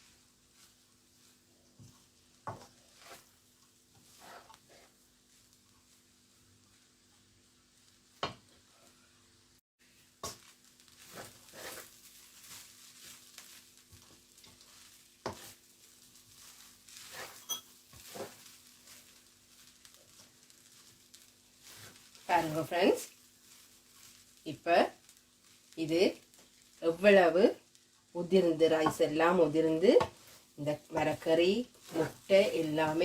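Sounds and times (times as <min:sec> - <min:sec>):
faint sizzle: 0:00.0 - 0:33.0
spoon scraping and knocking a pan: 0:01.7 - 0:03.4, 0:13.9 - 0:15.6, 0:16.3 - 0:19.2.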